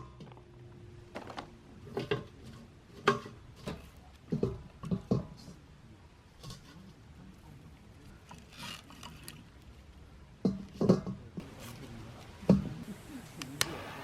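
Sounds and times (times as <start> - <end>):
small liquid sounds: 7.9 - 10.0.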